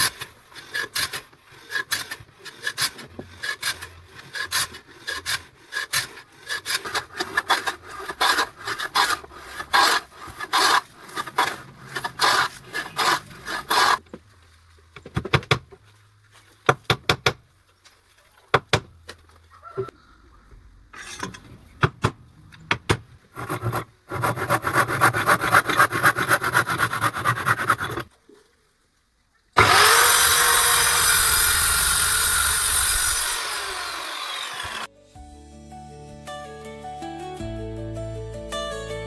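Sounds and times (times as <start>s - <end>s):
hand tool rasping on wood: 0.0s - 14.0s, 23.4s - 28.1s, 29.6s - 34.9s.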